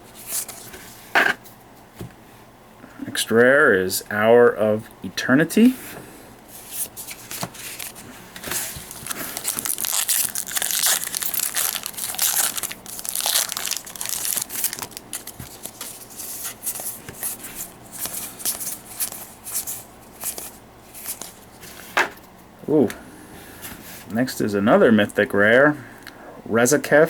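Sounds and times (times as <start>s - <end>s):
foil wrapper crinkling and tearing: 7.0s - 21.4s.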